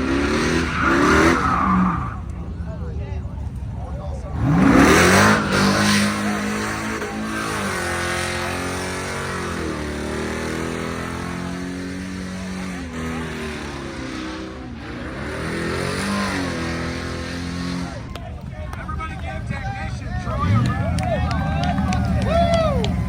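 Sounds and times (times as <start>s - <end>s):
car engine revving hard: 0.0s - 2.3s, 4.3s - 18.1s, 20.3s - 22.3s.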